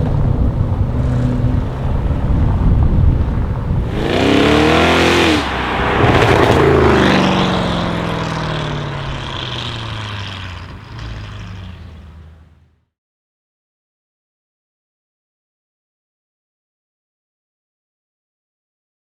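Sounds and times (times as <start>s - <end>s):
car engine accelerating hard: 0.0s - 12.8s.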